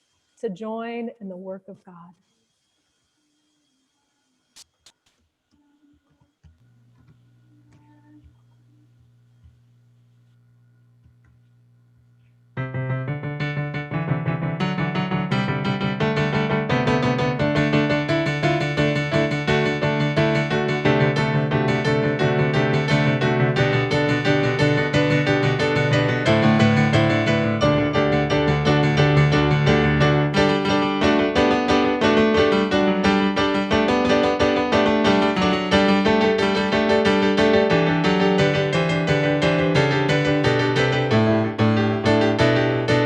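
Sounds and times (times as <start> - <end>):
piano music: 12.6 - 43.0.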